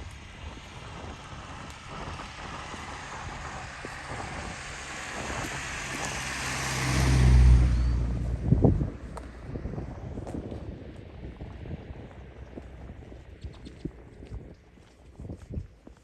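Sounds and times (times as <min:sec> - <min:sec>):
vehicle passing by: 0:01.1 - 0:10.1.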